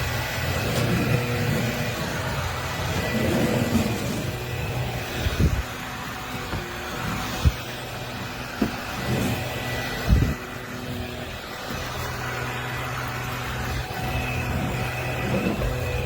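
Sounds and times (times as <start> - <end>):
vacuum motor whining: 0.0 - 16.0.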